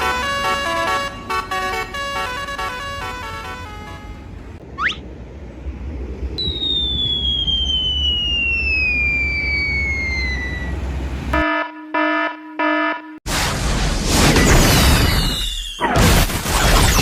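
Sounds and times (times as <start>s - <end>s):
low engine rumble: 2.4s - 11.4s
whistle sliding down in pitch: 6.4s - 10.8s.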